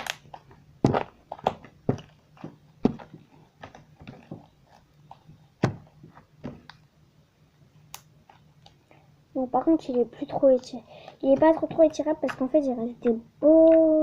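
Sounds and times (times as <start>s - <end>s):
crunchy slime popping and crackling: 0.0s - 6.8s.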